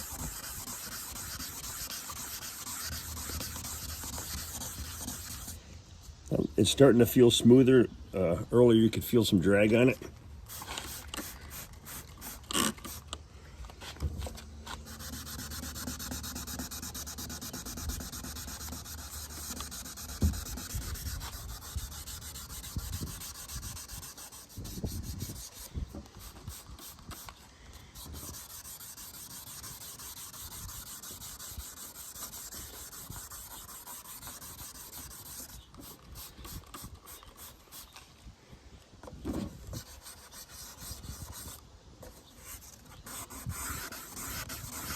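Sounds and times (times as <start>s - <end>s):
sanding pad rubbing plastic: 0.0s - 5.6s, 14.7s - 37.9s, 39.7s - 41.6s, 42.4s - 44.9s.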